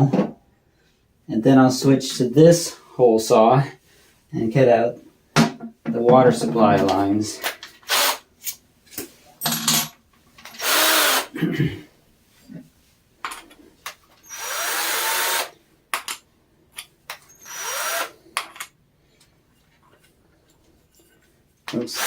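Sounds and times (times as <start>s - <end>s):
cordless drill motor whine: 10.6s - 11.3s, 14.2s - 15.5s, 17.3s - 18.1s.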